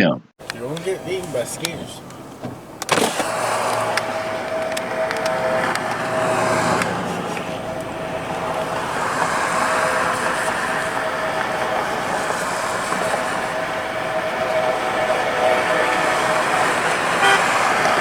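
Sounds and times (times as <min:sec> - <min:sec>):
freight train rushing: 0:00.4 - 0:18.0
held tone: 0:13.8 - 0:17.5.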